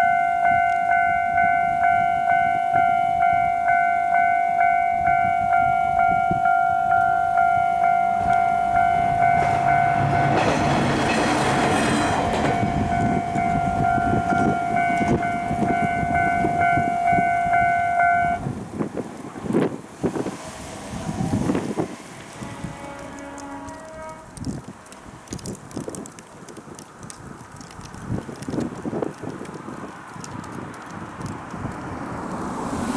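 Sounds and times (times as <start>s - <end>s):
train rushing past: 0.0s - 25.4s, 31.8s - 32.9s
level crossing two-tone bell: 12.6s - 18.4s.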